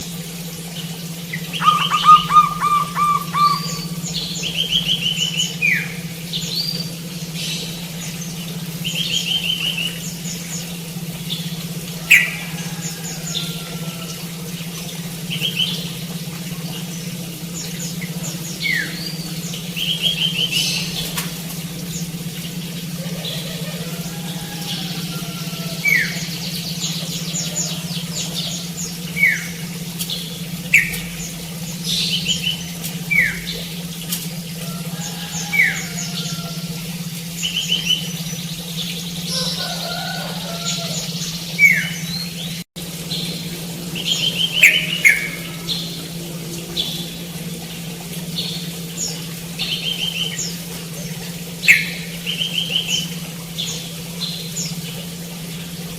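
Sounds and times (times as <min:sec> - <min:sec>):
birds trilled chirps: 0:00.0 - 0:55.9
steady low hum: 0:00.0 - 0:55.9
bird downward-sliding call: 0:01.3 - 0:06.1, 0:11.9 - 0:14.5, 0:43.9 - 0:47.4.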